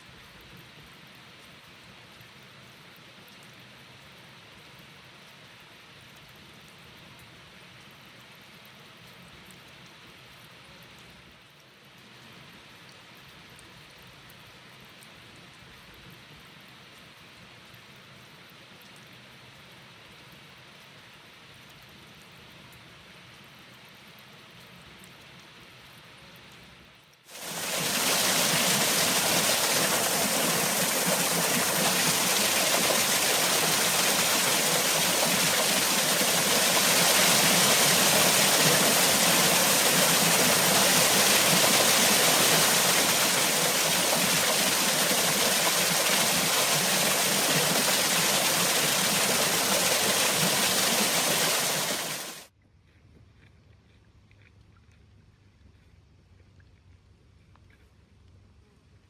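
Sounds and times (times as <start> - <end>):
faint hiss of water: 0.0 - 52.5
loud rushing water: 27.3 - 52.5.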